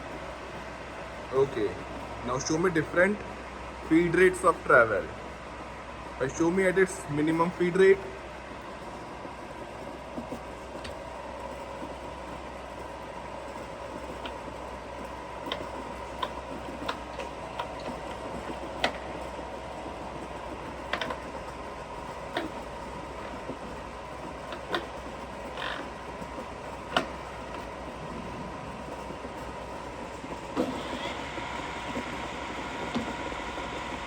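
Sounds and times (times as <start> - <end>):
drill press humming: 0.0 - 34.0.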